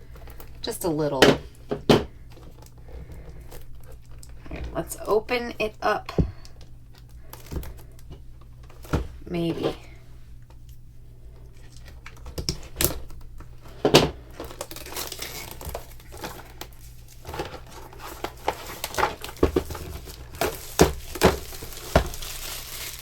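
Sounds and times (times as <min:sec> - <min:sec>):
plastic shrink-wrap tearing: 0:11.6 - 0:23.0.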